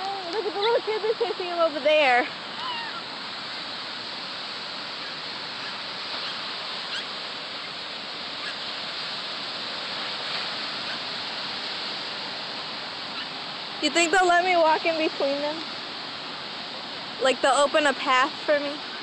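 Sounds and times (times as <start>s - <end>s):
ocean surf: 0.0s - 19.0s
faint bird calls: 2.5s - 3.8s, 4.9s - 8.7s, 10.8s - 11.1s, 13.1s - 13.4s.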